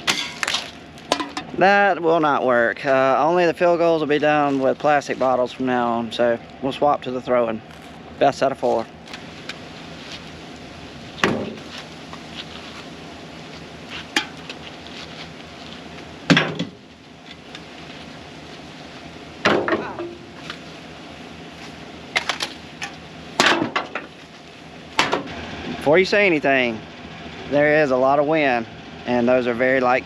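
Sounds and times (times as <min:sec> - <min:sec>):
cans clanking against dumpster: 0:00.0 - 0:01.6, 0:16.3 - 0:16.8, 0:19.4 - 0:20.2.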